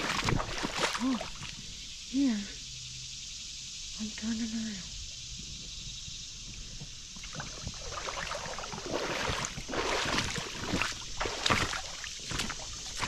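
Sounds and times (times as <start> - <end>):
footsteps wading through water: 0.0 - 1.6, 6.8 - 13.0.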